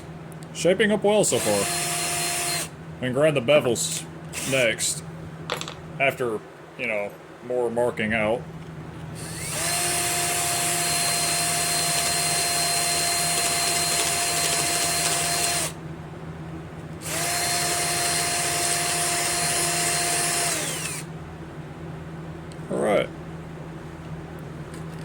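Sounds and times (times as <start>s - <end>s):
electric drill whining: 1.3s - 2.7s, 4.3s - 4.7s, 9.2s - 15.8s, 17.0s - 21.1s.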